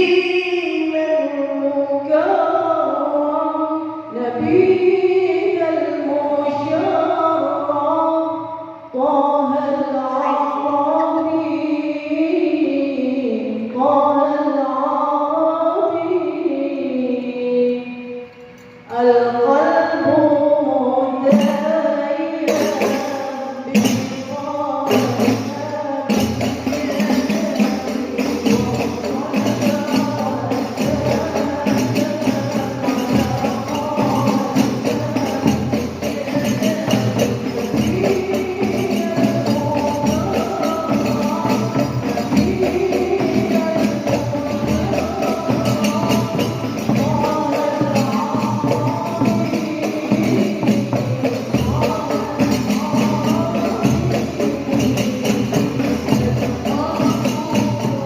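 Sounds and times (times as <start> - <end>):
person singing devotional melody: 0.0 - 58.0
frame drums with jingles: 21.2 - 58.0.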